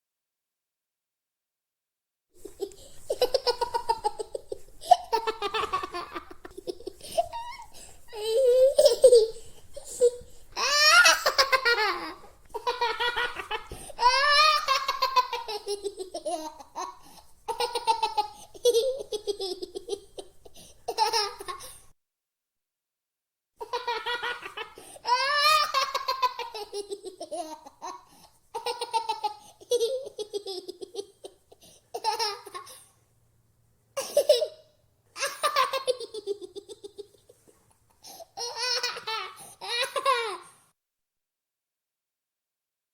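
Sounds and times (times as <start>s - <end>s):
toddler belly laughing: 2.4s - 21.8s, 23.6s - 32.8s, 38.1s - 40.5s.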